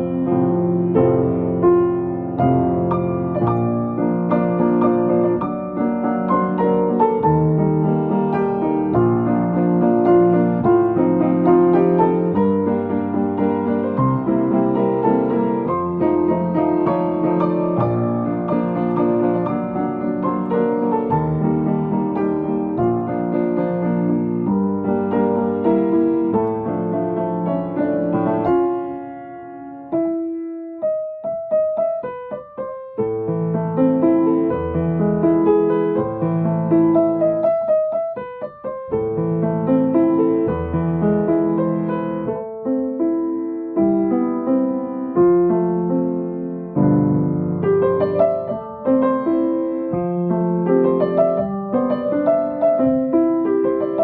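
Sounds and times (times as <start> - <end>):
piano melody over chords: 0.0 - 54.0.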